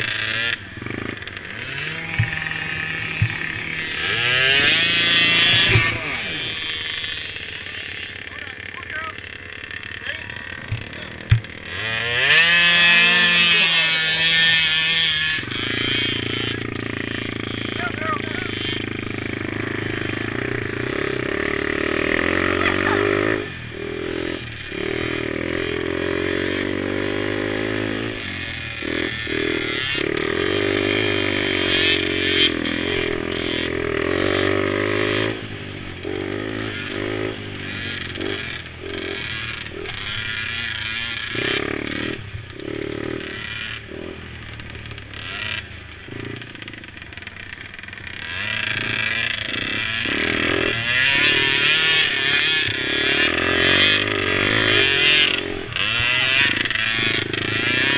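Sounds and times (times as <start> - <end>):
mini quad engines revving: 0.0 - 57.9.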